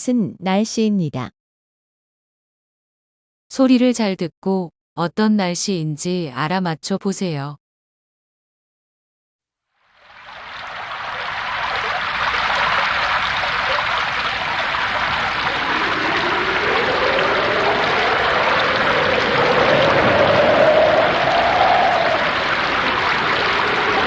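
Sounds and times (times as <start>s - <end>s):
heavy rain pouring: 10.1s - 24.0s
howling wind: 10.2s - 24.0s.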